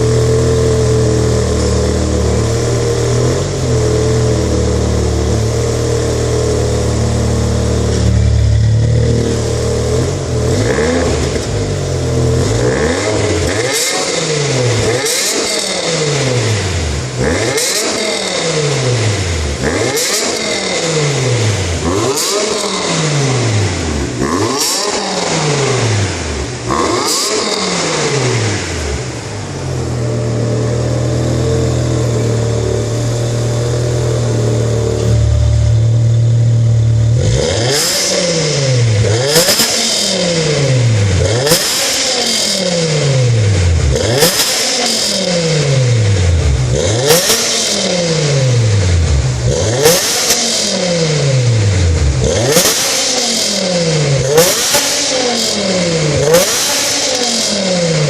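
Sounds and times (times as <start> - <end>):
car engine revving: 0.0 - 58.0.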